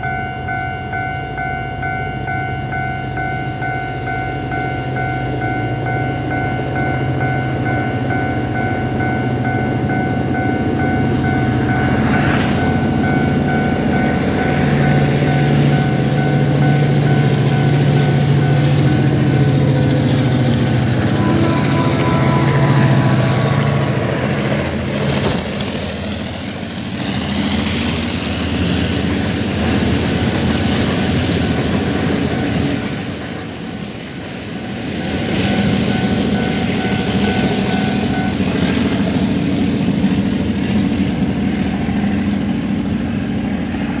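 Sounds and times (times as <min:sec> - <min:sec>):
locomotive engine hum: 0:01.6 - 0:32.8
level crossing bell ringing: 0:14.8 - 0:25.2
high wheel squeal: 0:20.6 - 0:28.9, 0:32.7 - 0:34.8.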